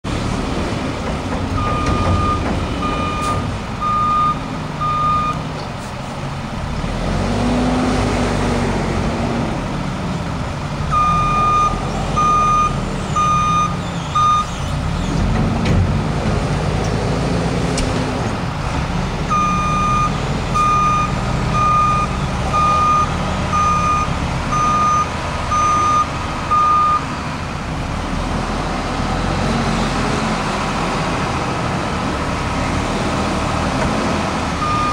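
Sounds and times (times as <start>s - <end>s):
reversing alarm beeping: 1.6s - 5.4s, 10.9s - 14.6s, 19.3s - 27.0s, 34.6s - 34.9s
vehicle engine revving: 6.7s - 9.7s.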